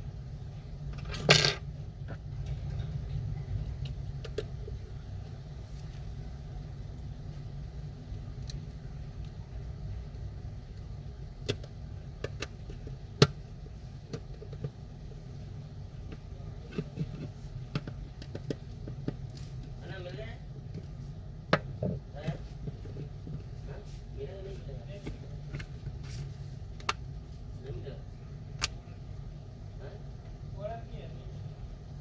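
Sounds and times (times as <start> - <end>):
steady low rumble: 1.7 - 14.1.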